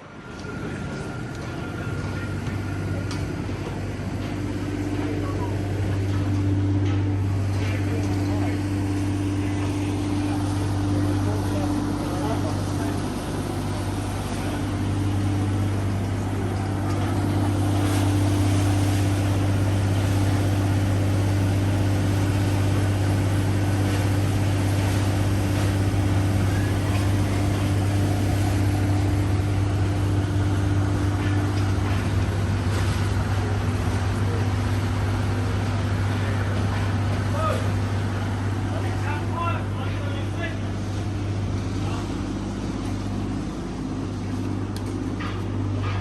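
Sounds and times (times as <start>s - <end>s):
urban background noise: 0.0s - 18.6s
low mechanical drone: 0.0s - 46.0s.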